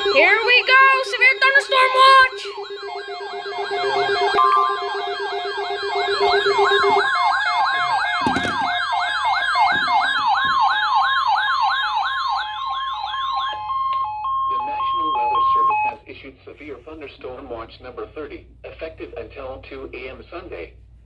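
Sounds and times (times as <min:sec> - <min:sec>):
electronic siren yelping: 0:00.0 - 0:16.0.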